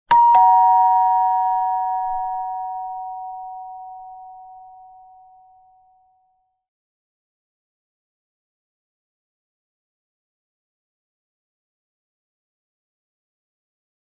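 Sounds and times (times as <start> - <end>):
two-tone doorbell chime: 0.1 - 6.4.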